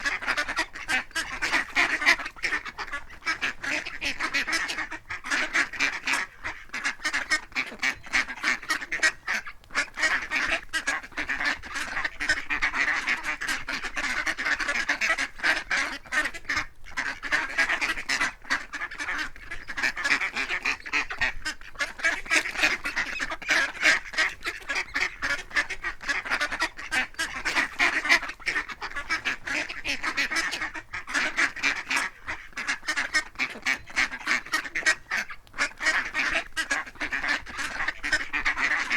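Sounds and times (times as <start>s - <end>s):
ducks quacking: 0.0s - 38.9s.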